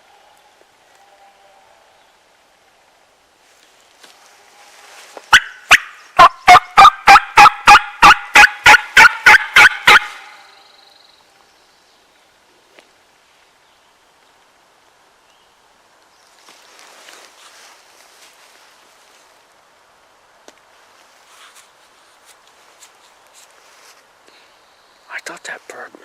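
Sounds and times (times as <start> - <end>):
turkey yelps: 5.3 - 10.5.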